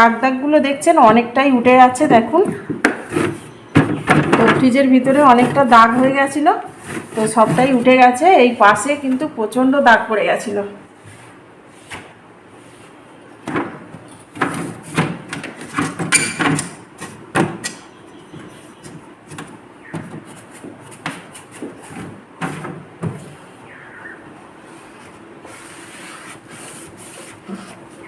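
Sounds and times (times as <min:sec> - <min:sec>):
knocks and clicks in refrigerator: 0:02.0 - 0:06.2, 0:13.4 - 0:20.3.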